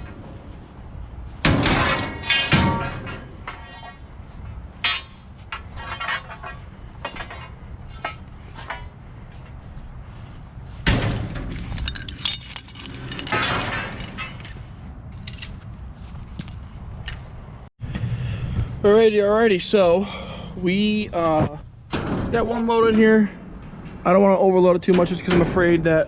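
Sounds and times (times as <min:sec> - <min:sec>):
metal poles clanking: 0:00.0 - 0:16.1
heavy metal bang: 0:01.4 - 0:03.5.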